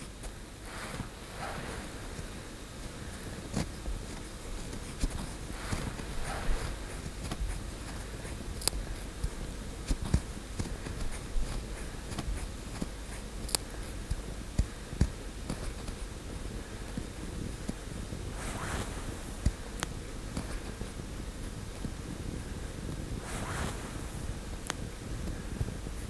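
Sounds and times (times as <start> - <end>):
ear pick scraping skin: 3.4 - 16.1.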